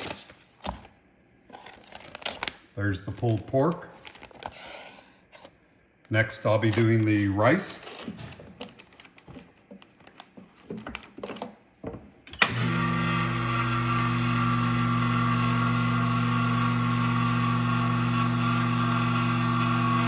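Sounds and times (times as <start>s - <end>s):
vacuum sealer pump humming: 12.3s - 20.0s.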